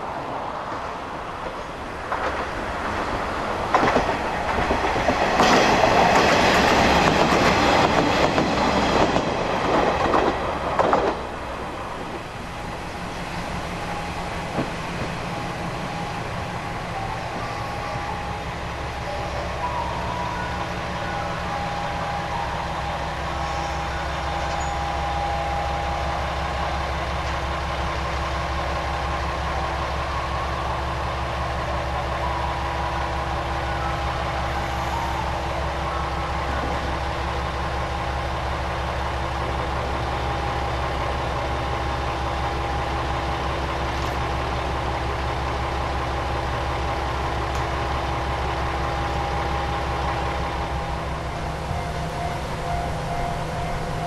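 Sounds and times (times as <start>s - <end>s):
diesel engine idling: 11.2s - 54.0s.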